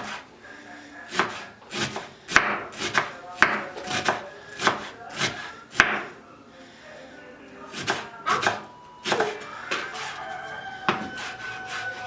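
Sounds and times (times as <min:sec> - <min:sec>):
knife chopping on wooden board: 0:01.1 - 0:06.1, 0:07.7 - 0:10.2, 0:10.9 - 0:12.0.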